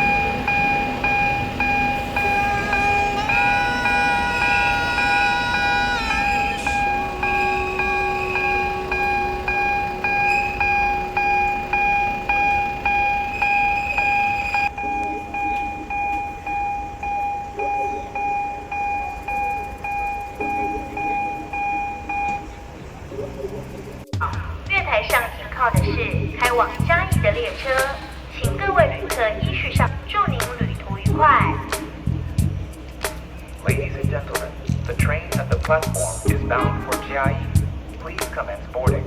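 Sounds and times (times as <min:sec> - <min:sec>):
wheels clacking over rail joints: 0:00.0 - 0:39.0
wheels squealing: 0:00.0 - 0:39.0.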